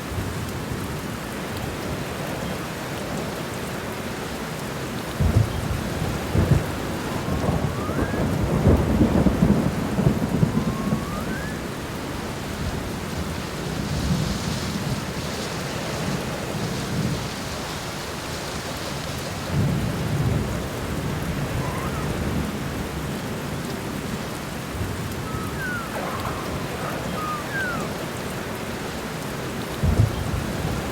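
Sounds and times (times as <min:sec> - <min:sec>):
heavy rain: 0:00.0 - 0:30.9
thunder rumbling: 0:05.2 - 0:17.6, 0:19.4 - 0:30.9
faint rising chirps: 0:07.7 - 0:08.4, 0:10.4 - 0:11.7, 0:25.2 - 0:28.1.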